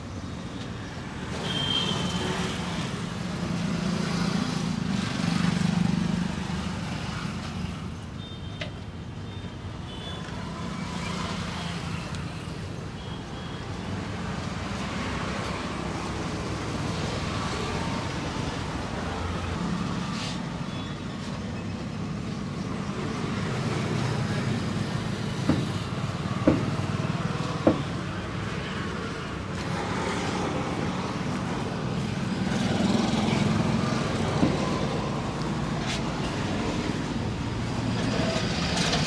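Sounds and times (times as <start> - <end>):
street traffic noise: 0.0 - 39.0
sharp knocks: 25.4 - 25.8, 26.4 - 26.8, 27.6 - 27.9.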